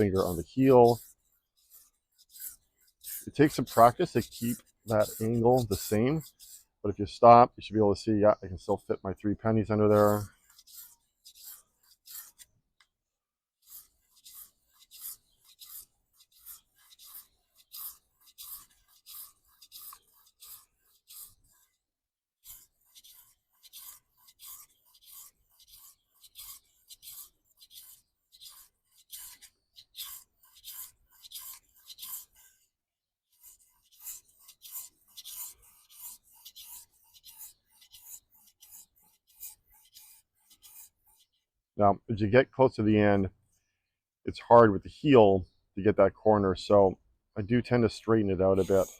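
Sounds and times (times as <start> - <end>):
knife stroked on whetstone: 0.0 - 6.8, 9.9 - 12.5, 13.6 - 21.8, 22.4 - 32.7, 33.3 - 41.4, 48.6 - 48.9.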